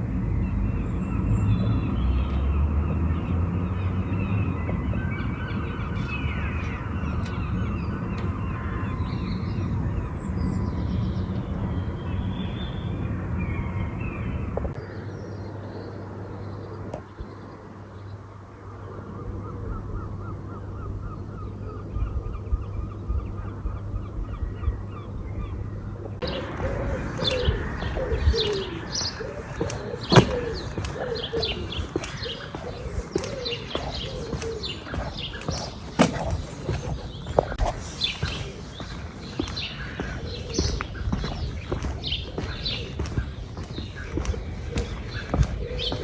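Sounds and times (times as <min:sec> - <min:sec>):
birds chirping: 0:00.0 - 0:46.0
low repeated bird calls: 0:00.0 - 0:46.0
sharp knocks: 0:30.1 - 0:30.8, 0:35.5 - 0:37.0.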